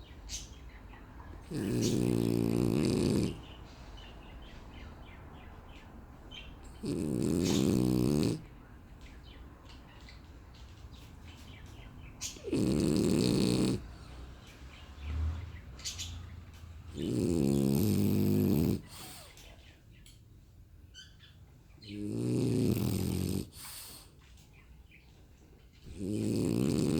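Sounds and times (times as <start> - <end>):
dog snoring: 1.4 - 3.6, 6.6 - 8.5, 12.2 - 14.3, 16.8 - 19.3, 21.9 - 24.1, 25.9 - 26.9.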